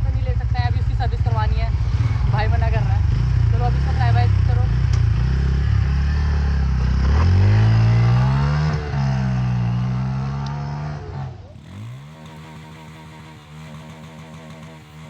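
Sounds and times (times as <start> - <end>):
motorcycle accelerating past: 1.2 - 15.0.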